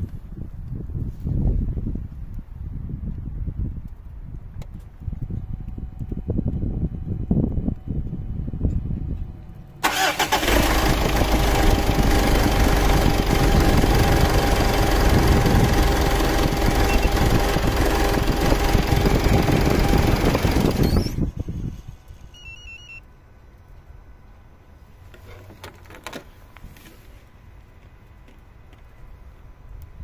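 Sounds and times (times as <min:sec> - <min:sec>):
diesel engine idling: 0:09.8 - 0:21.2
engine whistle on shutdown: 0:16.8 - 0:17.4.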